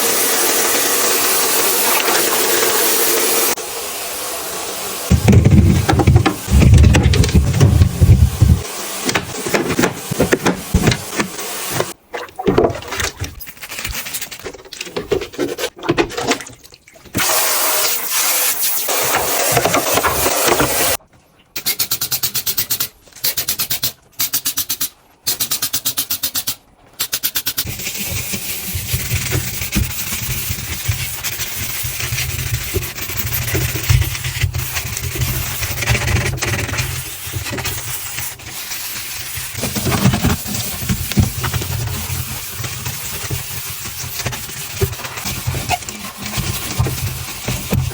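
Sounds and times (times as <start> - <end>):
scrubbing and wiping: 5.0 - 12.0, 12.8 - 15.8, 27.6 - 47.9.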